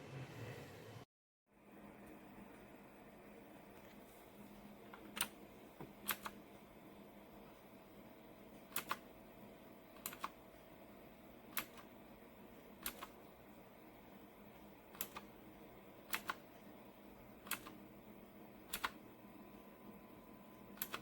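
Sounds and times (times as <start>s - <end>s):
mechanical keyboard key clicks: 12.8s - 13.1s.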